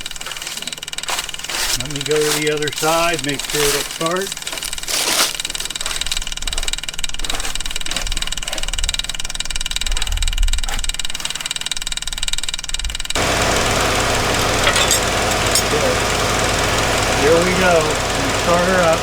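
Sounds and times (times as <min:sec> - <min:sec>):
electric fuel pump humming: 0:00.0 - 0:10.0, 0:10.8 - 0:19.0
clicks and handling knocks: 0:13.2 - 0:19.0.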